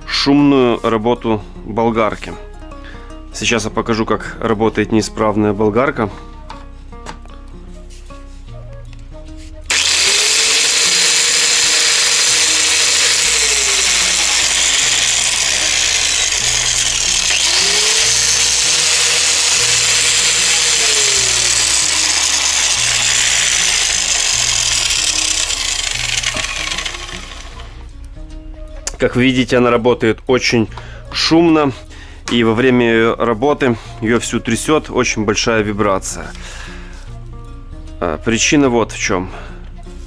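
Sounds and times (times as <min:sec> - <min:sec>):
angle grinder running noisily: 0:09.7 - 0:27.9.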